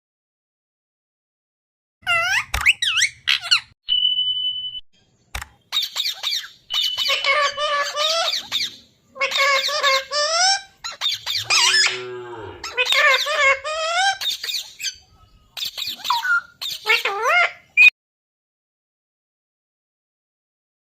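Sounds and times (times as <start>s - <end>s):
parrot calling: 5.7s - 17.9s.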